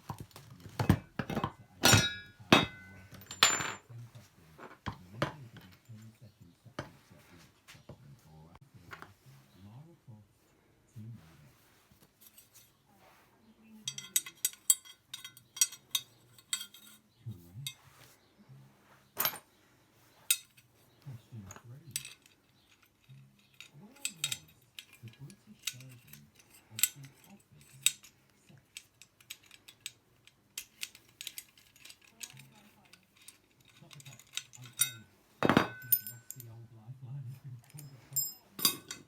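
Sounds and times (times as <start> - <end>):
small metal parts clinking: 0.6 - 3.9, 13.9 - 17.0, 19.2 - 19.5, 20.3 - 20.8, 21.5 - 36.6, 37.5 - 39.0.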